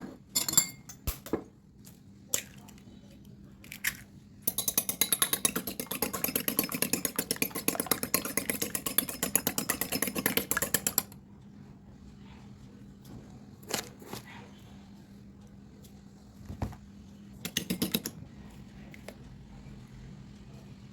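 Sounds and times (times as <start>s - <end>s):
batter beaten in a bowl: 4.4s - 11.2s, 17.4s - 18.2s.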